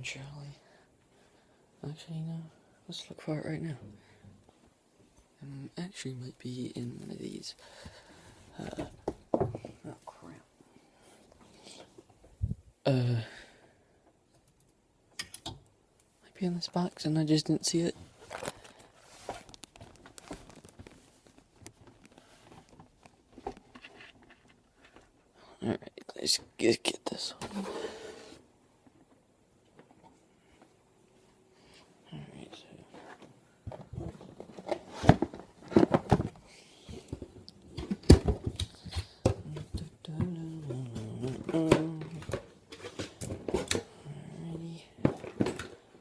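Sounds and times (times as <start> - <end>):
soft rustle: 17.9 - 25.4
rummaging through a box: 18.1 - 25.2, 32.9 - 43.9
objects knocking and clattering: 33.6 - 39.8.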